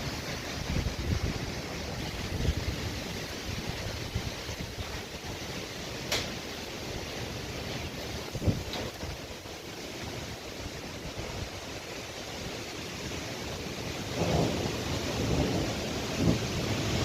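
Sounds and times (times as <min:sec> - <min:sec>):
storm wind gusting: 0:00.0 - 0:05.8, 0:06.5 - 0:12.1.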